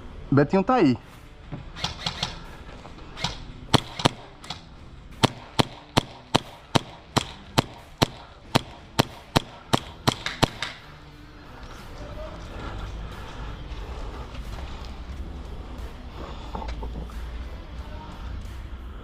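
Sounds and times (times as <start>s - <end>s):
airsoft pistol shots: 1.8s - 2.4s, 3.2s - 10.9s.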